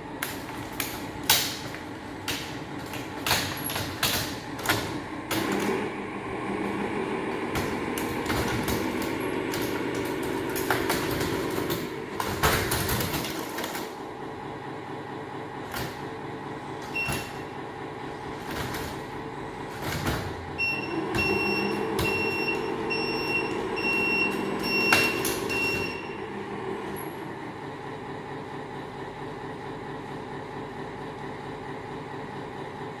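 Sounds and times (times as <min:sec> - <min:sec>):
electric hydraulic pump humming: 0:00.0 - 0:27.8.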